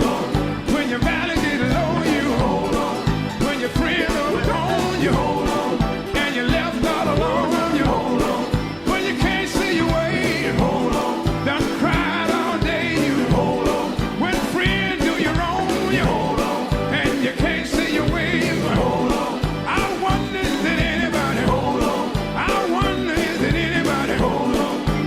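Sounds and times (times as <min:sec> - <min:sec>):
rock song with vocals: 0:00.0 - 0:25.0
steady drum beat: 0:00.0 - 0:25.0.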